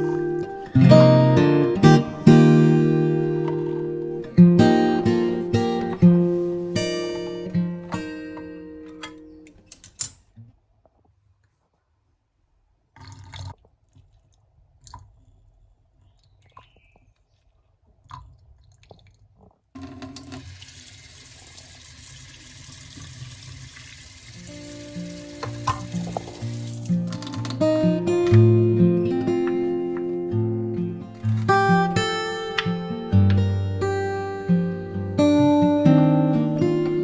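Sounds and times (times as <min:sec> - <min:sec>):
music: 0:00.0 - 0:09.5, 0:24.4 - 0:37.0
tap water running into sink: 0:19.8 - 0:27.7.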